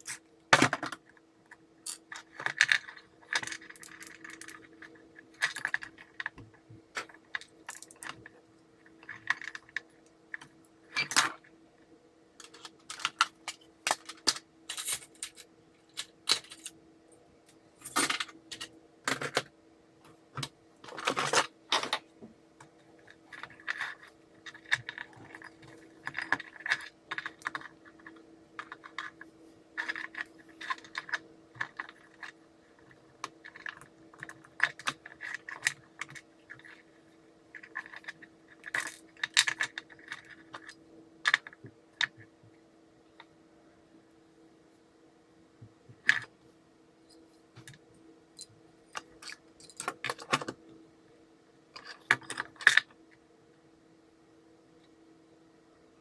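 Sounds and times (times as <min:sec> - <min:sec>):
plastic parts and tools clattering: 0:00.0 - 0:01.2, 0:01.9 - 0:11.4, 0:12.4 - 0:16.8, 0:17.8 - 0:19.5, 0:20.3 - 0:37.0, 0:37.6 - 0:42.3, 0:48.4 - 0:50.6, 0:51.8 - 0:53.0
faint steady hum: 0:00.0 - 0:56.0.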